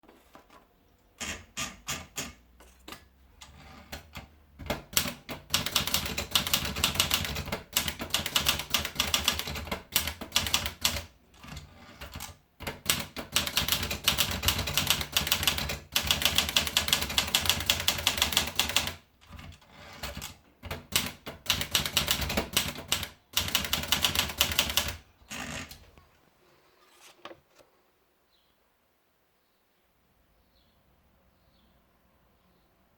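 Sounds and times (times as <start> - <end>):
typewriter keystrokes: 1.2 - 25.0.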